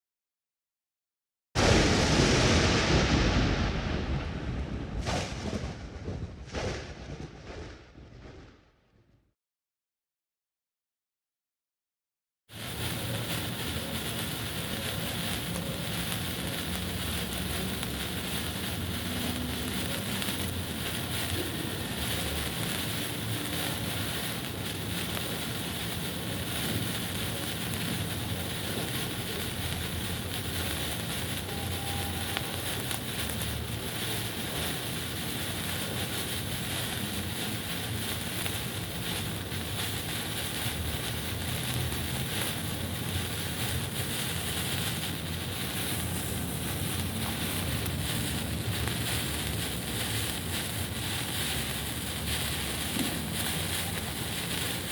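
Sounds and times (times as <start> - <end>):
low rumble: 1.6 - 8.8
signal flare hissing: 12.5 - 54.9.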